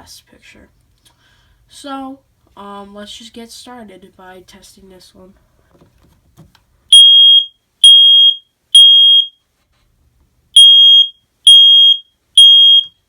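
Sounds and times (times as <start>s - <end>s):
smoke alarm beeping: 6.9s - 9.4s, 10.6s - 13.0s.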